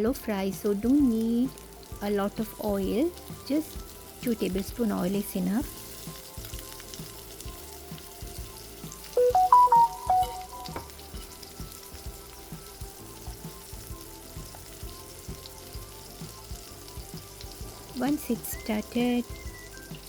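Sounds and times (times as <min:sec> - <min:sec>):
vegetable slices frying in oil: 0:00.0 - 0:20.0
short musical phrase: 0:09.2 - 0:10.8.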